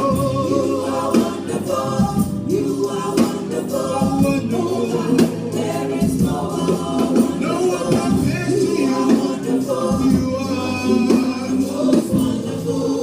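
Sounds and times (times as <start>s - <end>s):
instrumental accompaniment: 0.0s - 13.0s
voices singing together: 0.0s - 13.0s.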